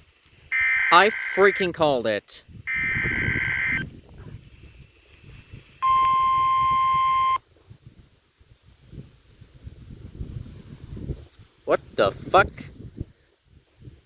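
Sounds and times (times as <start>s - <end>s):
steady warning alarm tone: 0.5s - 1.7s, 2.7s - 3.8s
warbling digital header tones: 0.5s - 1.7s, 2.7s - 3.8s.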